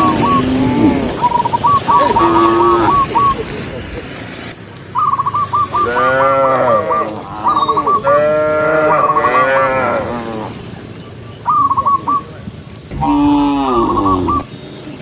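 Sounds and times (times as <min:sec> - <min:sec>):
cows mooing: 0:00.0 - 0:03.4, 0:05.8 - 0:10.6, 0:12.9 - 0:14.5
short high notes: 0:12.9 - 0:14.5.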